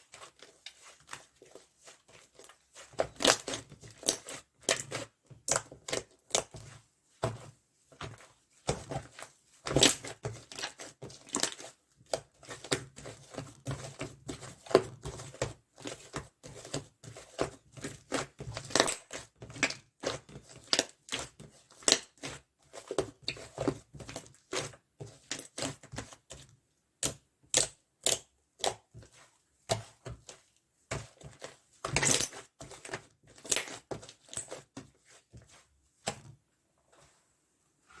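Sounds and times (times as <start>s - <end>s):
slime squish: 0.0s - 6.6s, 27.1s - 36.2s.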